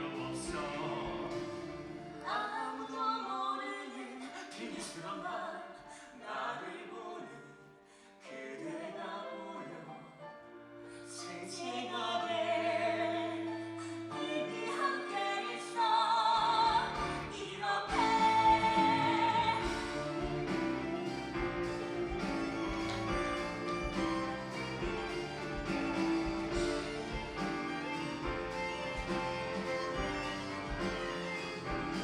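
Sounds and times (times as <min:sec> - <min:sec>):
musical accompaniment: 0:00.0 - 0:02.9, 0:11.8 - 0:32.0
person singing with vibrato: 0:00.0 - 0:05.4, 0:11.2 - 0:20.7.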